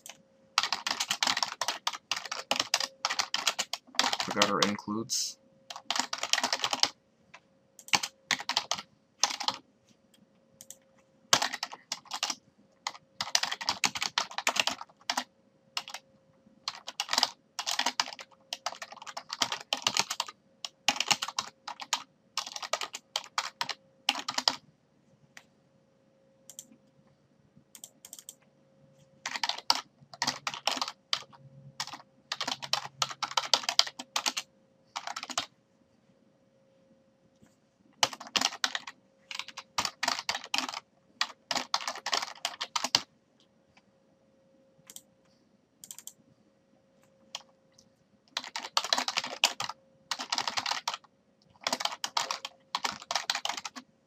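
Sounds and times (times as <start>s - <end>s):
typing on computer keyboard: 0.0s - 4.7s, 5.7s - 7.0s, 7.8s - 9.6s, 10.6s - 16.0s, 16.6s - 24.6s, 27.7s - 28.4s, 29.2s - 35.5s, 38.0s - 43.1s, 45.8s - 46.2s, 48.3s - 53.9s
faint steady hum: 0.0s - 54.0s.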